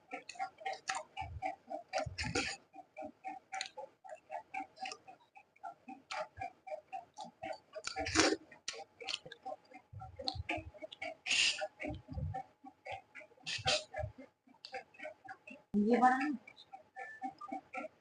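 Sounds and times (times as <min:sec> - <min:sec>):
person chewing food: 0:00.1 - 0:02.6, 0:03.2 - 0:15.4
wet slurp: 0:07.8 - 0:09.4.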